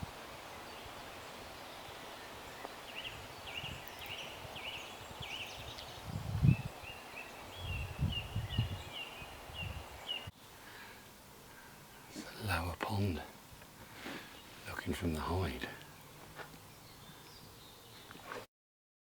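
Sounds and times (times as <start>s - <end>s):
bird singing: 0.4s - 13.3s, 14.2s - 18.4s
microphone rumbling bursts: 5.1s - 6.7s, 7.5s - 9.9s.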